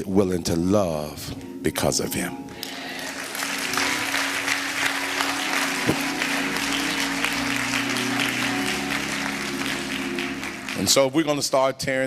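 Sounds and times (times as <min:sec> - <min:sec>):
congregation applauding: 0:02.6 - 0:11.6
sustained instrument chords: 0:03.1 - 0:11.2.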